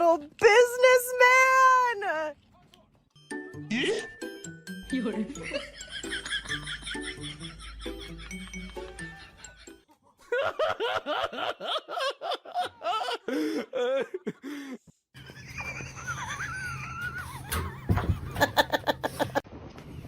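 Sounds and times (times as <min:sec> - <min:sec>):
person laughing hard: 0:05.3 - 0:19.4.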